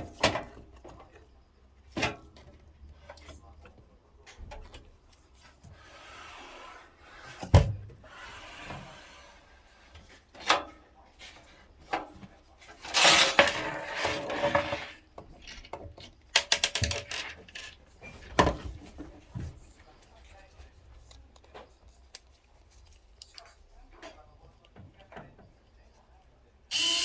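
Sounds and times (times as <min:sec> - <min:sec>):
rubbing and scraping: 0:12.7 - 0:15.5.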